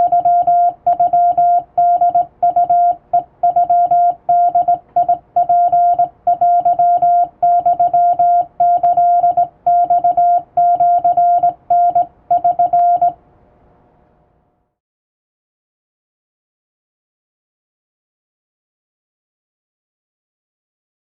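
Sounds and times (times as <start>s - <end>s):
morse code tone: 0.0s - 13.2s.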